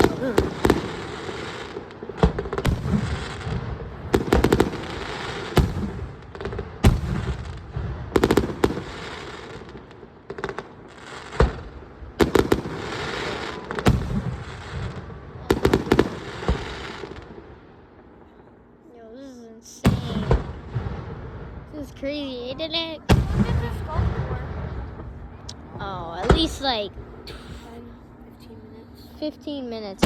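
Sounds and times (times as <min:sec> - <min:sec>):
rapid firework cracks: 0:00.0 - 0:17.6, 0:19.8 - 0:21.8, 0:23.1 - 0:24.6
fireworks bursting with bangs: 0:00.0 - 0:18.6, 0:19.6 - 0:28.2.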